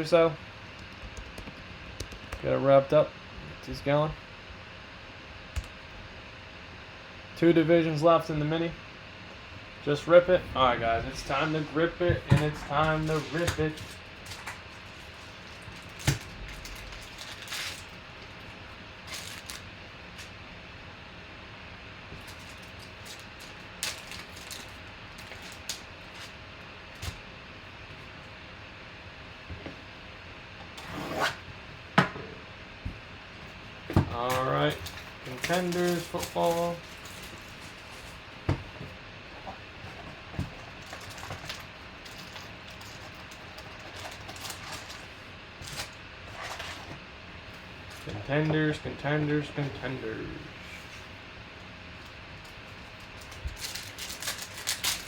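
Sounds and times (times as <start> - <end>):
faint steady hum: 0.0 - 55.0
card packs crinkling and tapping: 0.8 - 2.5, 11.0 - 18.4, 19.0 - 20.3, 22.1 - 26.4, 33.9 - 38.8, 39.5 - 46.7, 52.9 - 55.0.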